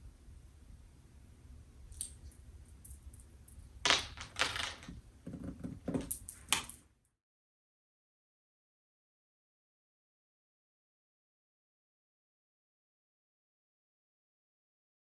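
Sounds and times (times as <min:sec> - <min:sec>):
clattering and rustling: 0:03.9 - 0:06.8.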